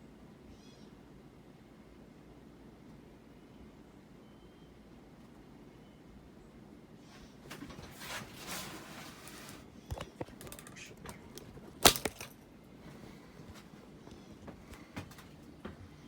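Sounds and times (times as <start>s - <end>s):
rustling handling noise: 7.4s - 15.5s.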